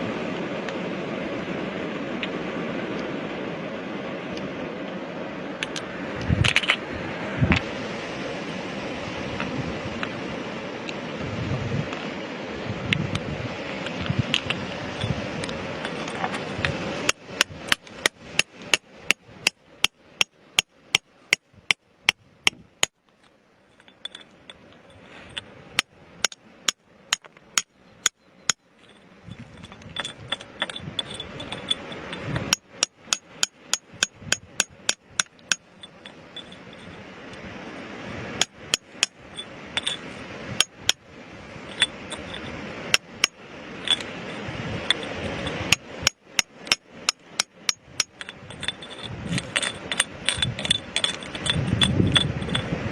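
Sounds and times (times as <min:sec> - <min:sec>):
hammer striking rock: 0:17.1 - 0:23.0, 0:25.8 - 0:28.6, 0:29.6 - 0:36.6, 0:40.6 - 0:41.0, 0:44.8 - 0:52.6.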